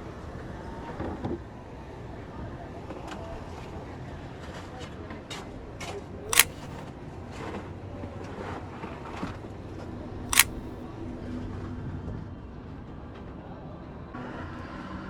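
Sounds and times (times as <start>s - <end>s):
camera shutter clicking: 6.3s - 6.8s, 10.3s - 10.8s.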